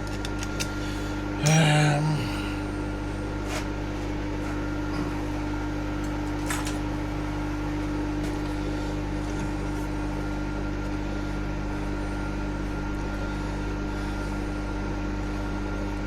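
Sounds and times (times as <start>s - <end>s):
electric motor hum: 0.0s - 16.0s.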